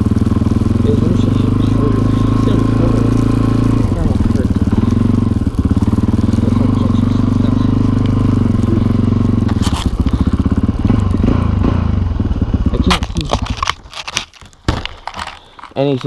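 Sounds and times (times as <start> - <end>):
motorcycle engine at low revs: 0.0 - 16.0.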